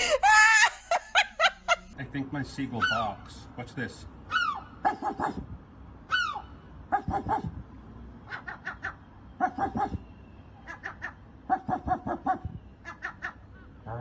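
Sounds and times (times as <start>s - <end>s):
seagull bark-like calls: 2.8s - 3.2s, 4.3s - 5.4s, 6.1s - 7.5s, 8.3s - 13.8s.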